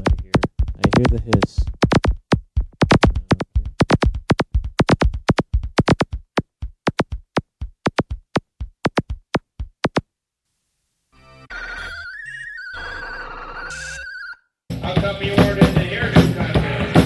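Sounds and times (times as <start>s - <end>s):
stuttering drum machine hits: 0.0s - 10.0s
wavering electronic tone: 11.2s - 14.5s.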